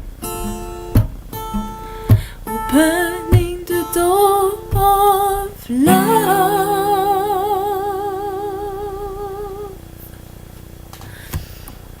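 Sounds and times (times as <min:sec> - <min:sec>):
woman singing long note: 0:02.7 - 0:09.8.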